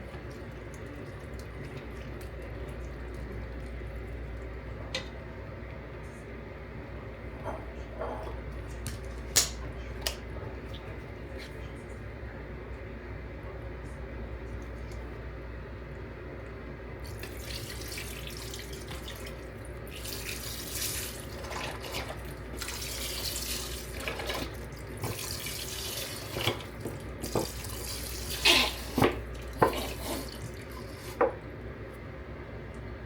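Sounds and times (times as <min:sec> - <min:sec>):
tap water running into sink: 0:17.1 - 0:31.4.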